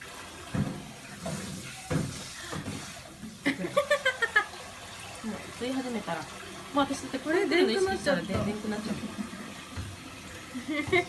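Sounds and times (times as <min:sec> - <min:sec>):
person laughing: 0:03.4 - 0:04.5, 0:10.6 - 0:11.0.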